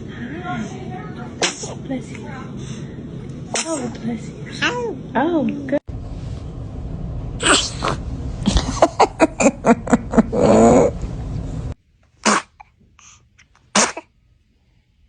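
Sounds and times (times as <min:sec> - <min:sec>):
baby sneezing: 0:01.4 - 0:01.8, 0:03.5 - 0:03.9, 0:12.2 - 0:14.1.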